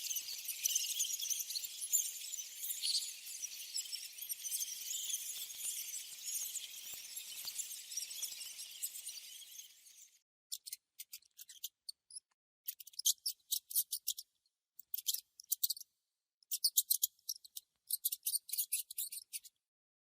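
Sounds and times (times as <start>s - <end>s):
mouse squeaking: 0.0s - 15.9s, 16.5s - 19.6s.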